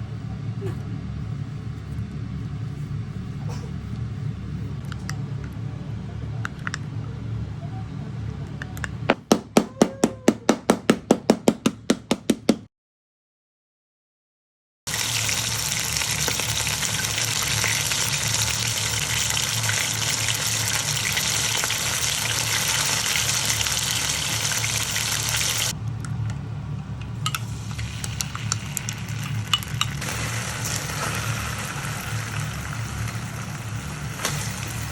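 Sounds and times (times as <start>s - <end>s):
chicken frying in hot oil: 14.9s - 25.8s, 27.5s - 34.9s
low hum: 14.9s - 34.9s.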